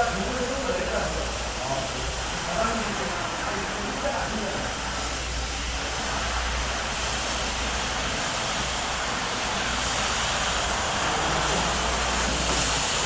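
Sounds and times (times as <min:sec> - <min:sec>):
floor cleaning machine running: 0:00.0 - 0:13.0.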